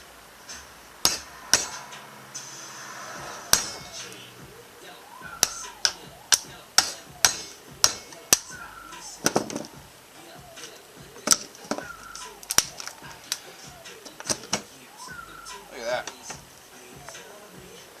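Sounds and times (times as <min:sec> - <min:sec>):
hammer striking plastic case: 0:09.2 - 0:09.8.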